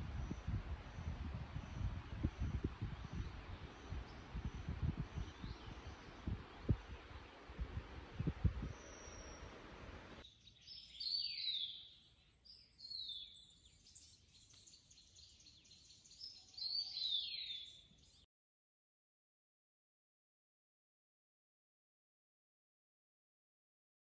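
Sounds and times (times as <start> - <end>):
songbird whistling: 8.6 - 9.6, 10.5 - 12.0.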